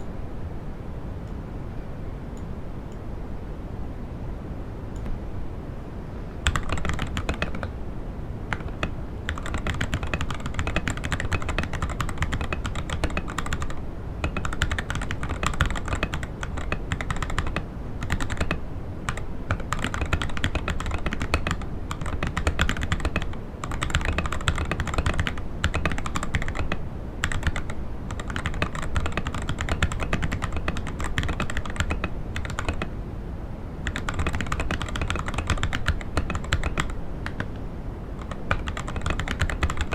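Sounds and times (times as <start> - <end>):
mechanical keyboard typing: 6.4 - 7.8, 8.5 - 32.9, 33.8 - 37.6, 38.2 - 39.9.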